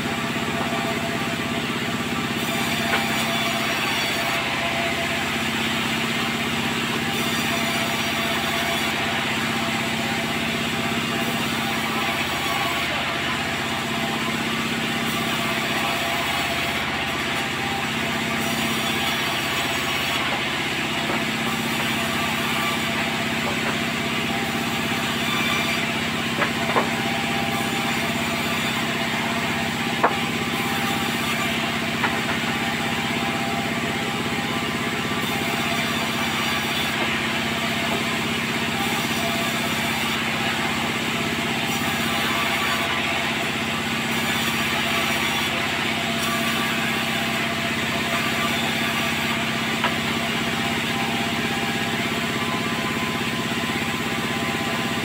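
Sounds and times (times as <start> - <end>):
sawmill machinery droning: 0.0 - 55.0.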